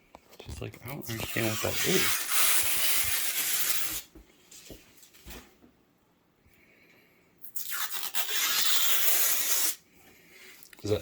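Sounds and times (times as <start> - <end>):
packaging scratchy rustle: 1.1 - 4.1.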